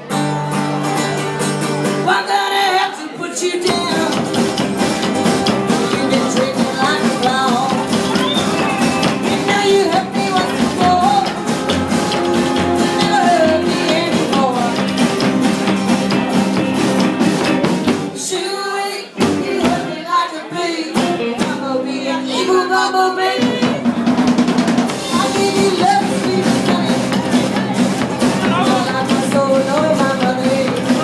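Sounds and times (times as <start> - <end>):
rock band playing: 0.0 - 2.2, 3.1 - 18.3, 19.1 - 31.0
person singing: 0.0 - 16.8, 17.4 - 24.2, 24.9 - 31.0
drum kit: 3.6 - 18.3, 19.1 - 20.1, 20.9 - 21.8, 23.2 - 31.0.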